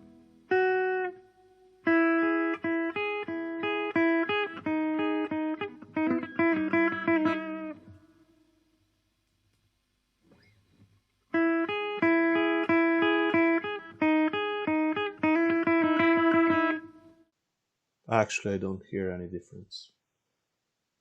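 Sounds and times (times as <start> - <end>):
electric guitar picked notes: 0.0 - 8.2, 11.3 - 17.2.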